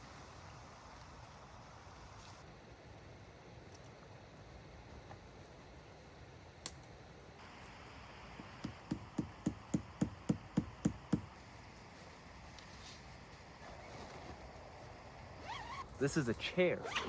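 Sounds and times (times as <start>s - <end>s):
tent stake hammered into ground: 8.6s - 11.4s.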